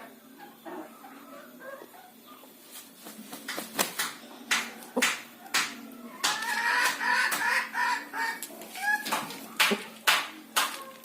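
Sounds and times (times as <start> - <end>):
chicken calling: 6.0 - 10.0.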